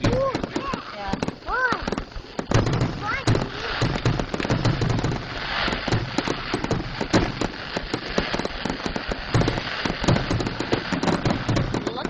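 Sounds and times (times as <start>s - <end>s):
aerial fireworks popping and crackling: 0.0s - 12.0s.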